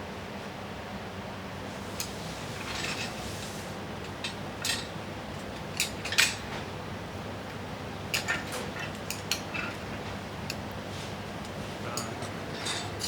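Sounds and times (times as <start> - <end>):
steady low hum: 0.0 - 13.0
kitchen utensils clicking and scraping: 2.0 - 6.7, 8.1 - 13.0.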